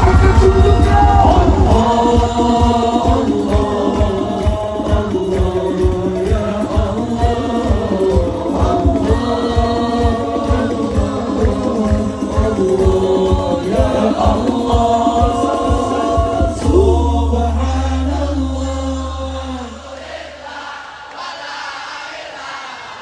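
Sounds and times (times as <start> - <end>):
steady drum beats: 0.0 - 19.8
many voices singing together: 0.0 - 23.0
low bass note held: 16.6 - 19.8.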